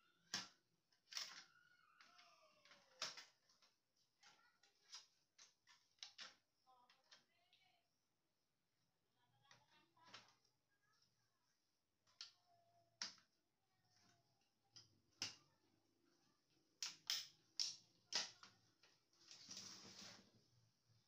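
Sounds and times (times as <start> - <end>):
scraping rustle: 19.2 - 20.4.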